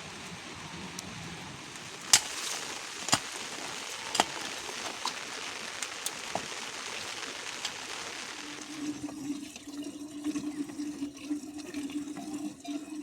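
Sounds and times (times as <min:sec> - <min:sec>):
steady rain falling: 0:00.0 - 0:09.6.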